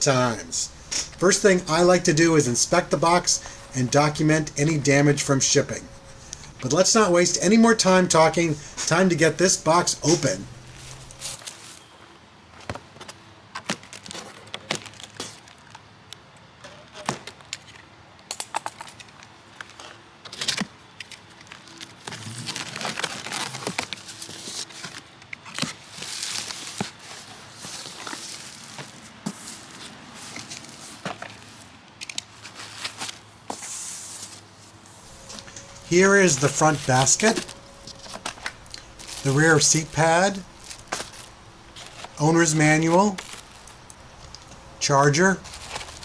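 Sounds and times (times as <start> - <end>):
packing rustling: 0.1 - 11.9, 20.4 - 33.3, 34.0 - 46.0
wrapping crinkling and tearing: 0.3 - 11.8, 13.6 - 15.8, 18.5 - 33.3, 35.0 - 46.0.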